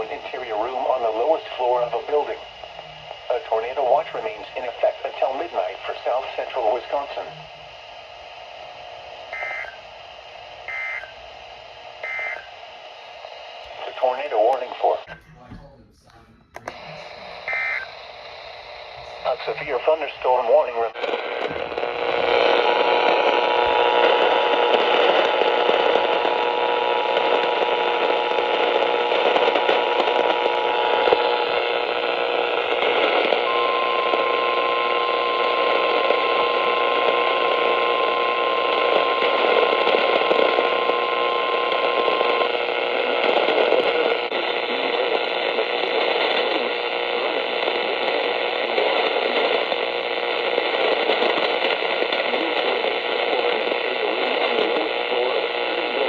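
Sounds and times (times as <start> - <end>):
radio static hiss: 0.0 - 15.6, 16.6 - 56.0
faint steady tones: 0.0 - 56.0.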